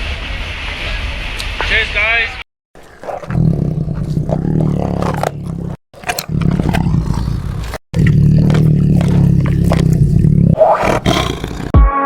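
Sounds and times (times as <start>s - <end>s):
train rumbling: 0.0s - 2.4s.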